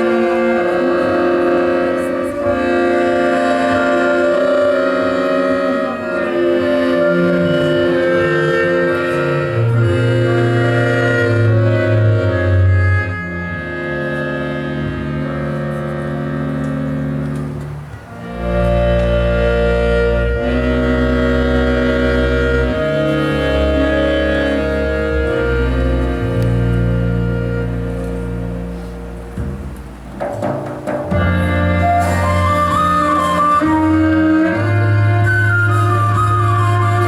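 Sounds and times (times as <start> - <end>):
double bass line: 0.0 - 37.0
live ensemble long held notes: 0.0 - 37.0
deep heavy bass: 7.1 - 30.2, 31.1 - 37.0.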